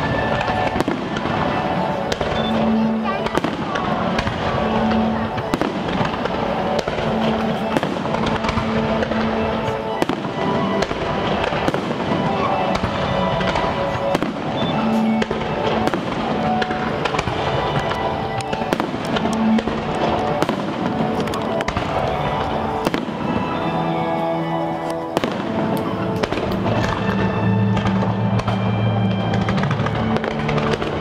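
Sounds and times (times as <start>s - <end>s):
fireworks bangs and crackles: 0.0s - 31.0s
music playing: 0.0s - 31.0s.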